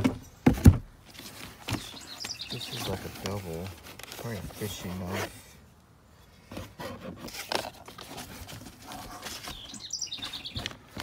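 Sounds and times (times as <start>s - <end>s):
high chirps: 9.6s - 10.6s.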